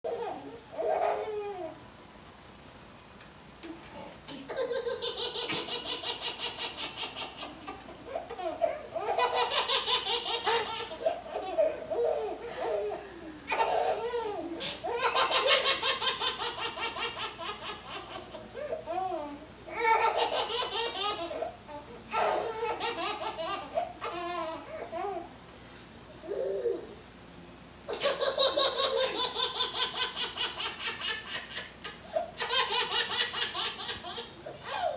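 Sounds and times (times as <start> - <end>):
baby laughing: 4.5 - 25.2, 27.9 - 34.9.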